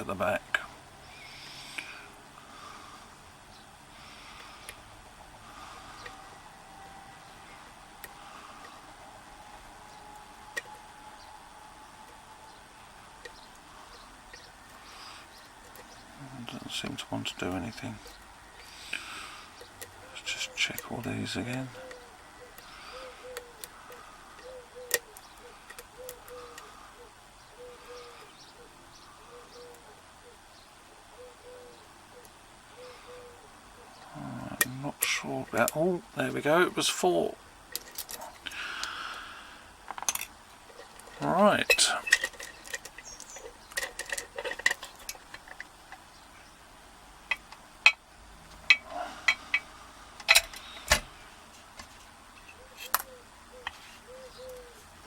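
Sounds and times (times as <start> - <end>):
lock picking tools clicking: 39.9 - 46.0
lock pick metallic clicks: 47.3 - 51.1.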